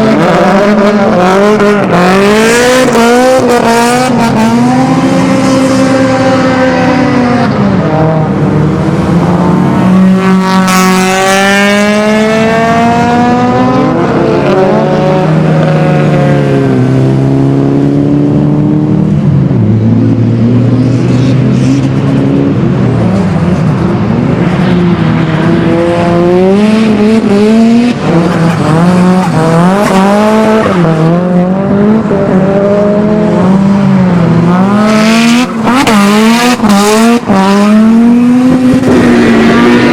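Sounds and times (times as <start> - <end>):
race car engines revving: 0.0 - 39.9.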